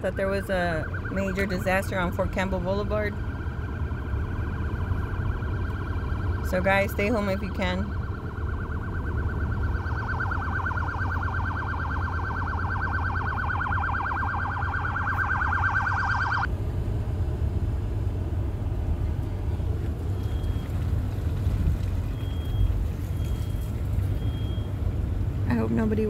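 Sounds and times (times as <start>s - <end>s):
warbling emergency siren: 0.0s - 16.5s
low traffic rumble: 0.0s - 26.0s.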